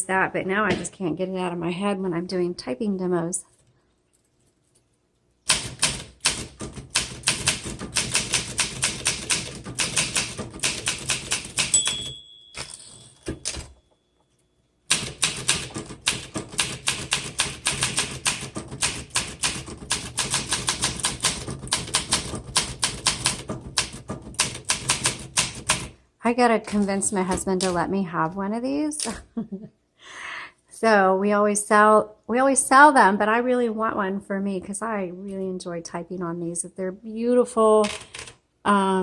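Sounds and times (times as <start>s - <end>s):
manual typewriter typing: 5.5s - 13.8s, 14.9s - 26.0s, 37.8s - 38.4s
typewriter margin bell: 11.5s - 13.8s.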